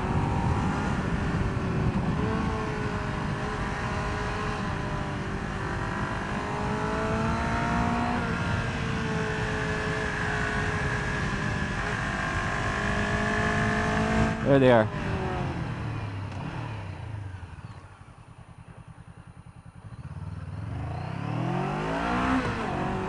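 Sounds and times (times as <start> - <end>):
vehicle engine accelerating: 0.0 - 17.8, 19.6 - 23.0.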